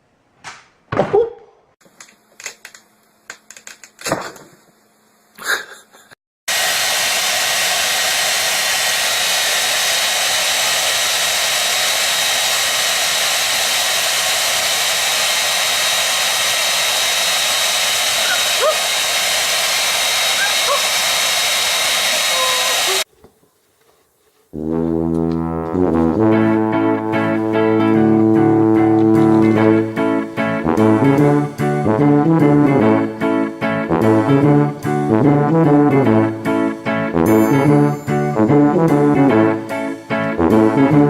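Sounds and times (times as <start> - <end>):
motor-driven blower whining: 6.5 - 23.1.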